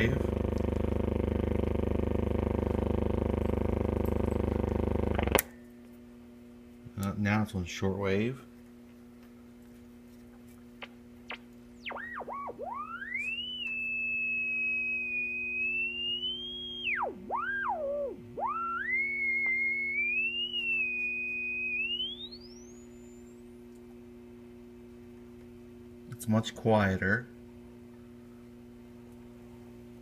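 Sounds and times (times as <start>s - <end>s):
low hum: 0.0s - 6.0s, 10.6s - 25.8s
radio whistle swooping in pitch: 11.3s - 23.2s.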